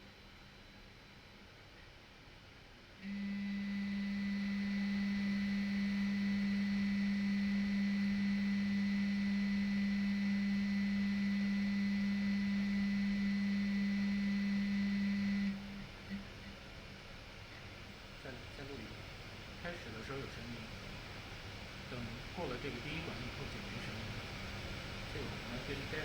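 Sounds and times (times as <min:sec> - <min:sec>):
pump humming: 0:03.0 - 0:18.2.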